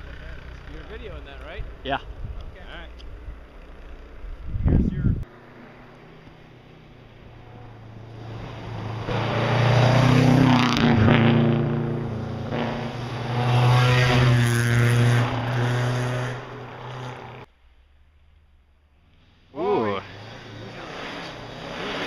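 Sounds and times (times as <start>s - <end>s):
rally car engine at full throttle: 5.1s - 17.5s, 19.2s - 22.0s.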